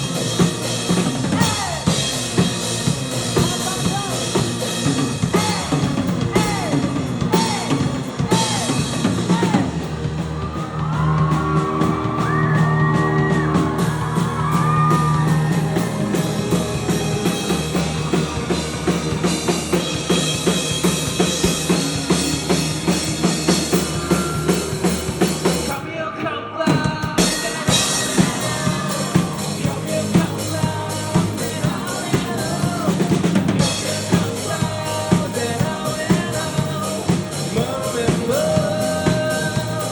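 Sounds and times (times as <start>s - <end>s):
rock band playing live: 0.0s - 26.0s, 26.7s - 39.9s
person singing: 1.2s - 2.2s, 5.3s - 9.8s, 23.8s - 39.9s.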